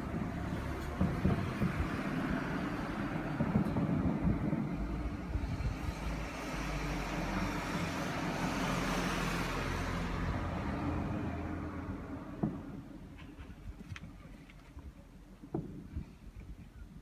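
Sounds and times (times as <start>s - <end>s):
road vehicle passing: 0.0s - 13.2s.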